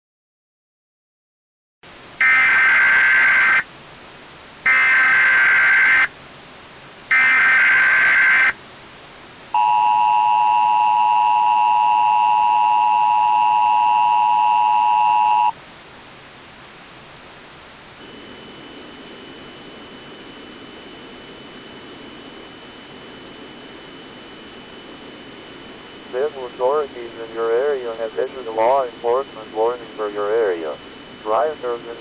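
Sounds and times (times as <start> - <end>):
chirping data bursts: 2.2 - 3.6, 4.7 - 6.1, 7.1 - 8.6
two-tone attention signal: 2.2 - 3.6, 9.6 - 15.6.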